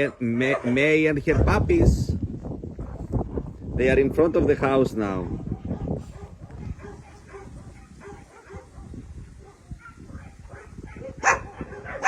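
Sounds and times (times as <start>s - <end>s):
loud sharp dog bark: 5.5s - 12.0s.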